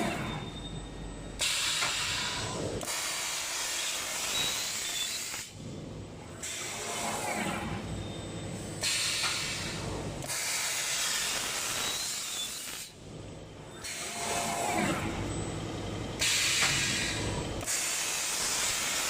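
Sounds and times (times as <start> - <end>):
machine scraping sheet metal: 6.4 - 7.9.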